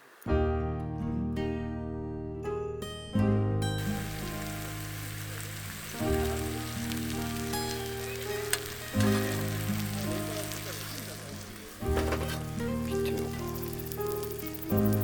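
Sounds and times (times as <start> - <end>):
background music: 0.3 - 15.0
meat sizzling on campfire: 3.8 - 15.0.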